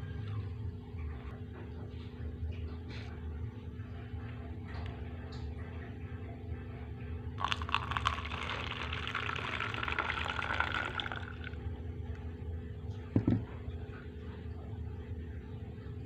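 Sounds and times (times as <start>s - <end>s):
steady low hum: 0.0s - 16.0s
coffee pouring into a cup: 7.4s - 11.6s
knock: 13.2s - 13.5s.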